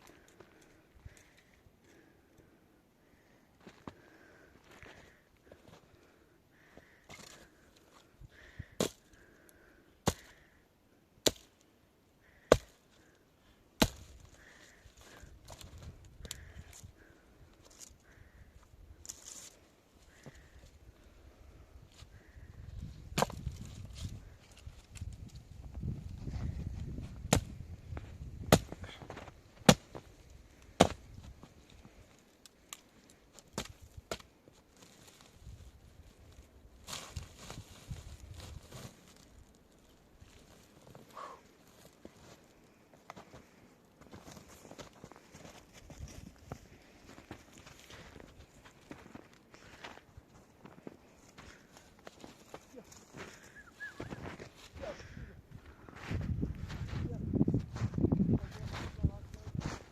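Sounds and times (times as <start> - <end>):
axe chopping wood: 11.2 - 11.5, 12.5 - 12.8, 13.8 - 14.1, 27.2 - 27.5, 28.4 - 28.8, 29.6 - 30.0, 30.8 - 31.0.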